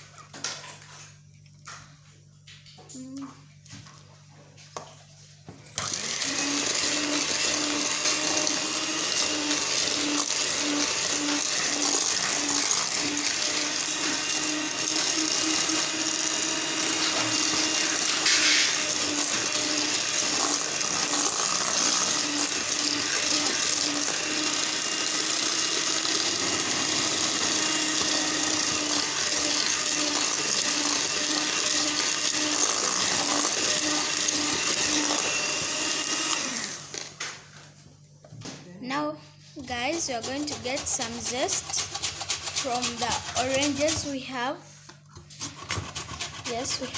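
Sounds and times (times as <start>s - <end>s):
electric mixer beating batter: 5.8s - 37.2s, 39.7s - 44.4s, 45.7s - 46.9s.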